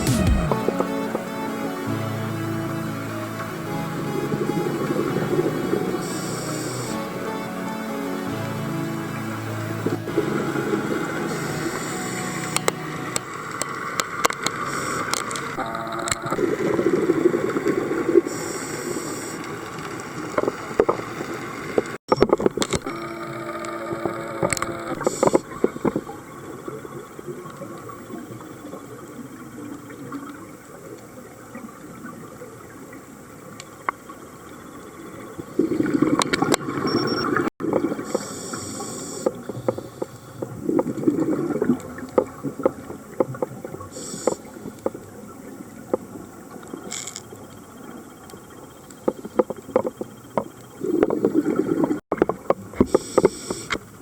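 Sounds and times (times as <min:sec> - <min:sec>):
faint clicks in water: 0:39.2 - 0:45.1.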